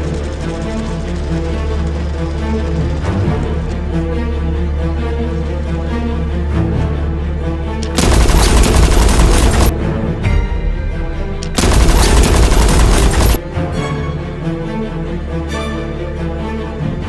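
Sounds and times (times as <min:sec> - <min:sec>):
background music: 0:00.0 - 0:17.0
rapid automatic gunfire: 0:07.8 - 0:09.7, 0:11.4 - 0:13.4.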